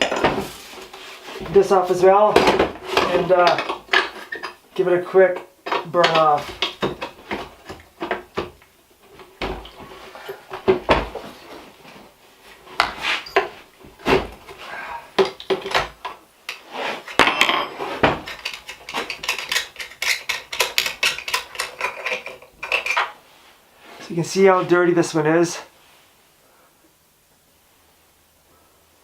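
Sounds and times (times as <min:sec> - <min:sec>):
metal parts and tools clinking: 0:17.1 - 0:23.2.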